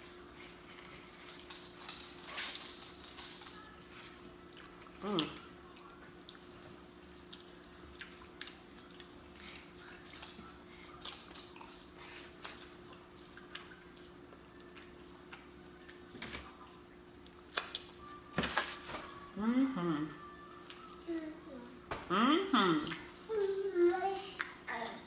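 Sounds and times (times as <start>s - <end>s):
faint steady hum: 0.0s - 25.0s
chewing and lip smacking: 4.4s - 18.1s.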